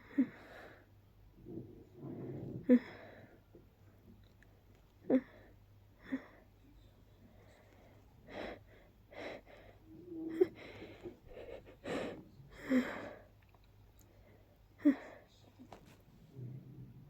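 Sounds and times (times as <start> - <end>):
person gasping breaths: 7.3 - 13.4, 14.1 - 15.3.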